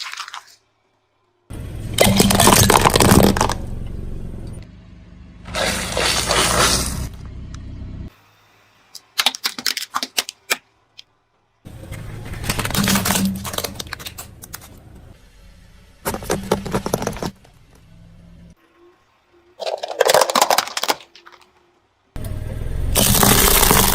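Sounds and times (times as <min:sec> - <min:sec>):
tyre crushing brittle objects: 0:00.0 - 0:00.6, 0:02.0 - 0:03.6, 0:05.5 - 0:07.2, 0:09.0 - 0:10.6, 0:11.7 - 0:14.7, 0:19.6 - 0:21.5, 0:23.0 - 0:23.9
low steady hum: 0:00.7 - 0:08.7.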